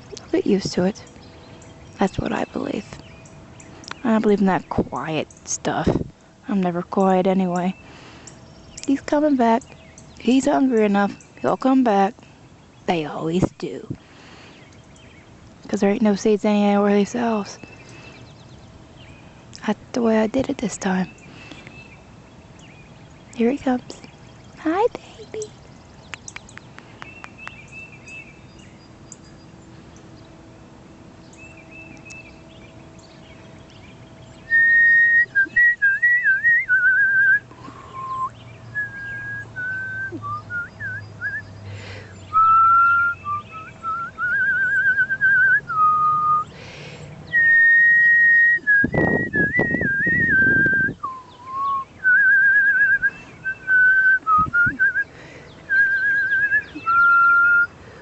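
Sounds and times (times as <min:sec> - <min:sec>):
woman whistling bird calls: 0:34.5 - 0:41.5, 0:42.3 - 0:46.5, 0:47.3 - 0:55.1, 0:55.7 - 0:57.7.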